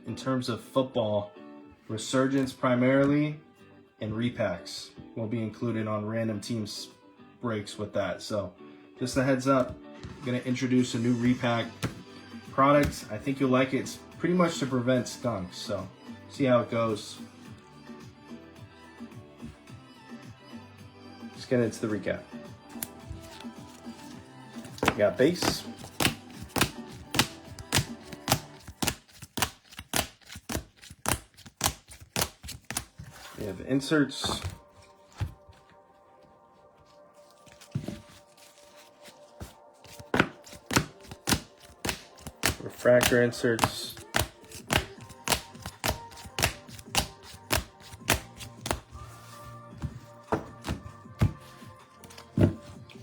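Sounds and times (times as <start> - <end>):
faint background music: 0.0 - 53.0
cards tapping down: 11.6 - 12.1, 12.7 - 13.3, 22.7 - 33.3, 34.2 - 35.6, 37.4 - 52.8.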